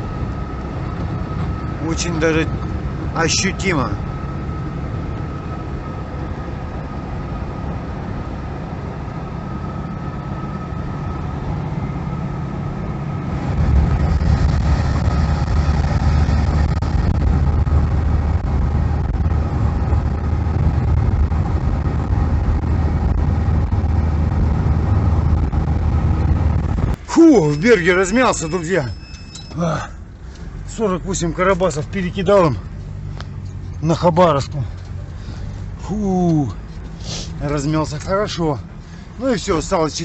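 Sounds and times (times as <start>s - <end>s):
engine and road noise drone: 0.0s - 40.0s.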